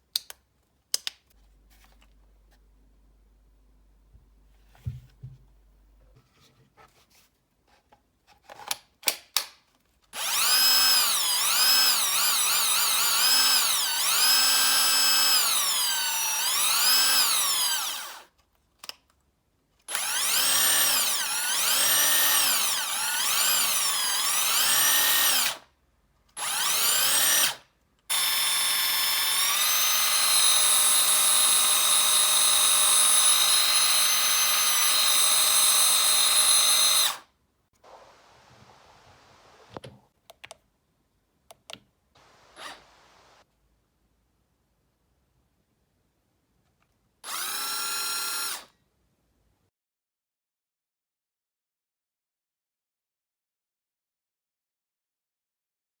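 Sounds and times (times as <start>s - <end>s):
impact wrench motor whine: 10.2s - 18.3s, 19.9s - 25.6s, 26.4s - 37.2s, 42.2s - 43.4s, 47.3s - 48.7s.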